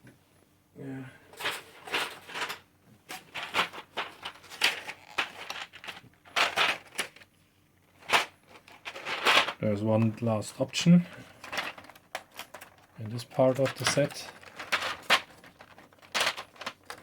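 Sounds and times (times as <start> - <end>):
plastic keycaps clattering: 11.2 - 17.0.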